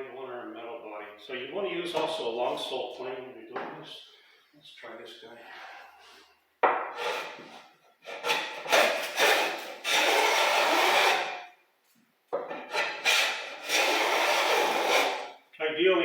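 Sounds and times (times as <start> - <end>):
hand plane cutting wood: 7.0 - 11.4, 12.6 - 15.4.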